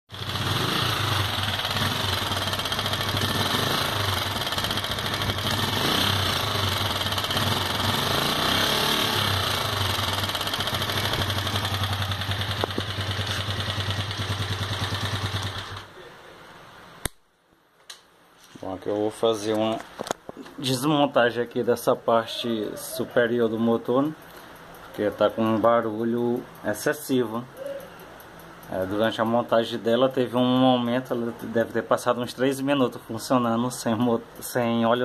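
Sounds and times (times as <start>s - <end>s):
motorcycle engine running: 0.1s - 15.9s
sharp click: 17.0s - 18.1s.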